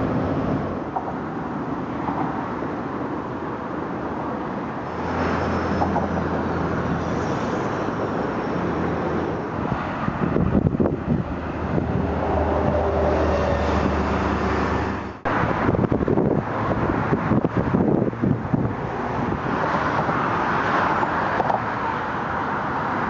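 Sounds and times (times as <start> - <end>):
traffic and road noise: 0.0 - 23.0
wind buffeting microphone: 8.9 - 22.8.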